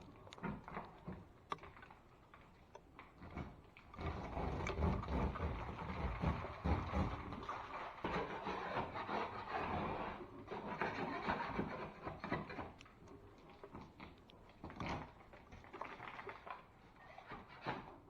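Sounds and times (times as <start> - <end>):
hand tool scraping drywall: 4.0 - 12.8.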